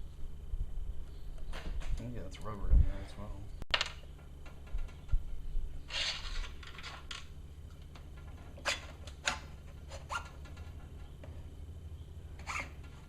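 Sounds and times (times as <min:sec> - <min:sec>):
steady low hum: 0:00.0 - 0:13.0
scraping rub: 0:05.8 - 0:07.0, 0:09.7 - 0:10.9, 0:12.4 - 0:13.0.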